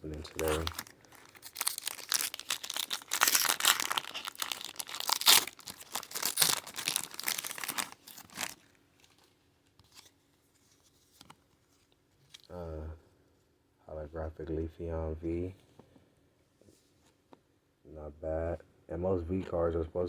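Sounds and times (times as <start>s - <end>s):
foil wrapper crinkling and tearing: 0.0s - 9.2s.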